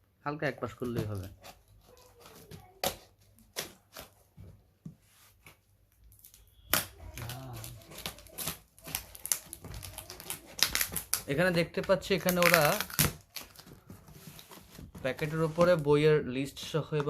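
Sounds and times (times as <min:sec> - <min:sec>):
packaging being torn open: 0:06.1 - 0:11.4, 0:12.2 - 0:13.8.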